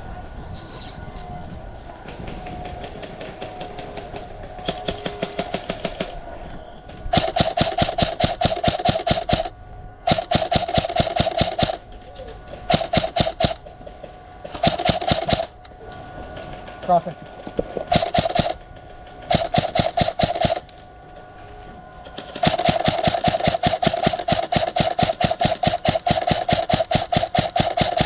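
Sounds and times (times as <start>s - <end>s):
airsoft gun firing bursts: 7.1s - 15.6s, 17.9s - 18.6s, 19.2s - 20.7s, 22.1s - 28.0s.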